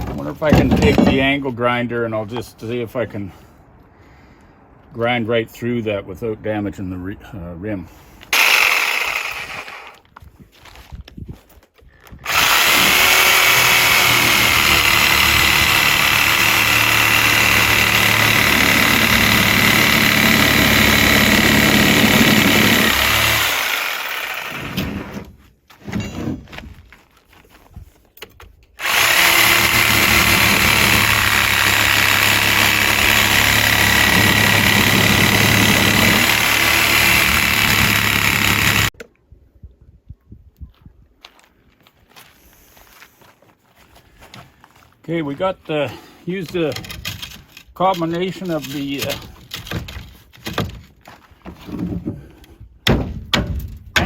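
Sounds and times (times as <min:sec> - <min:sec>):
angle grinder cutting tire: 0:08.3 - 0:10.0, 0:12.2 - 0:25.1, 0:28.8 - 0:39.0.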